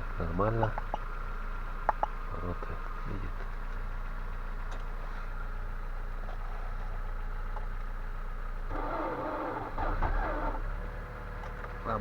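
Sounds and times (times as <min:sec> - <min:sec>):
car engine cranking on starter: 0:08.7 - 0:12.0.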